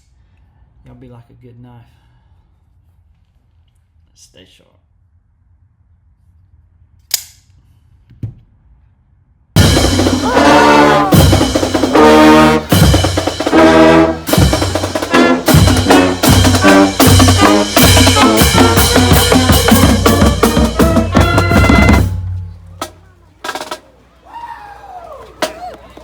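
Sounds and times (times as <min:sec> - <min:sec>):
loud music with drums and brass: 0:09.6 - 0:23.8.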